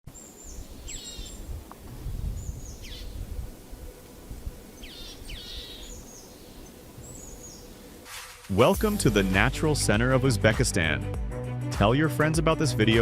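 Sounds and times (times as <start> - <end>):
songbird whistling: 2.4 - 3.2, 4.8 - 7.7.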